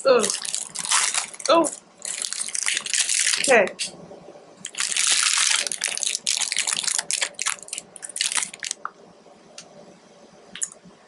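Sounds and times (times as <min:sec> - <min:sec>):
plastic packaging crinkling: 0:00.1 - 0:03.7, 0:04.6 - 0:08.8.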